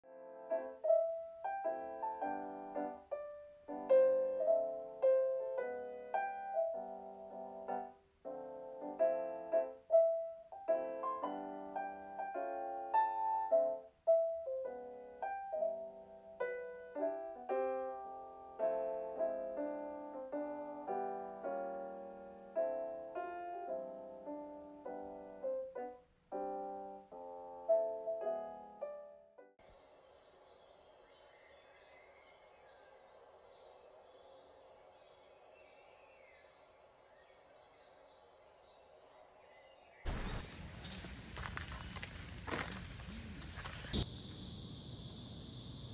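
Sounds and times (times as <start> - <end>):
gentle piano music: 0.0 - 29.7
faint steady hiss: 29.6 - 45.9.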